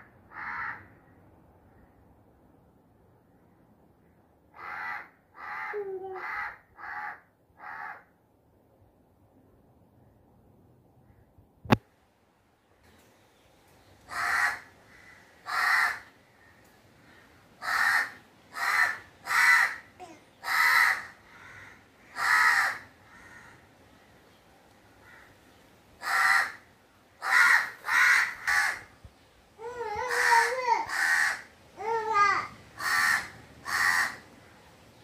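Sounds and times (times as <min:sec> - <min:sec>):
crow cawing: 0:00.3 - 0:01.0, 0:04.5 - 0:08.1, 0:14.1 - 0:23.7, 0:25.0 - 0:25.4, 0:26.0 - 0:26.6, 0:27.2 - 0:28.9, 0:30.0 - 0:34.2.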